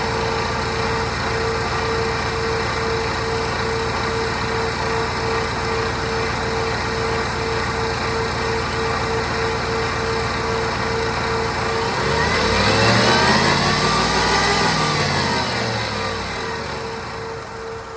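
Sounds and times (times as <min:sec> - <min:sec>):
car engine idling: 0:00.0 - 0:17.9
engine revving: 0:11.0 - 0:17.9.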